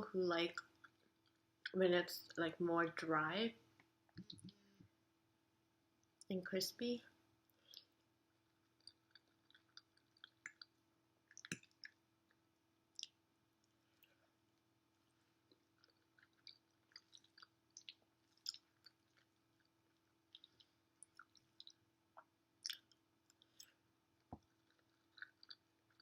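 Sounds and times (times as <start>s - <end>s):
wet chewing mouth clicks: 7.6s - 12.0s, 13.0s - 13.2s, 15.5s - 26.0s.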